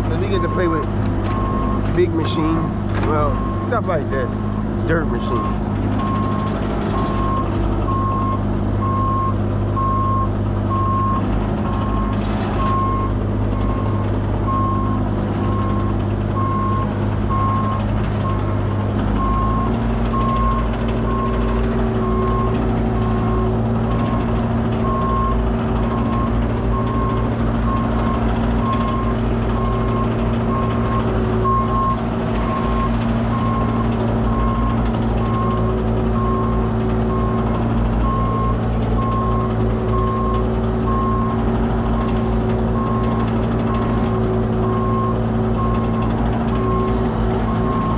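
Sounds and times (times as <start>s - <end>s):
diesel engine running: 0.0s - 47.9s.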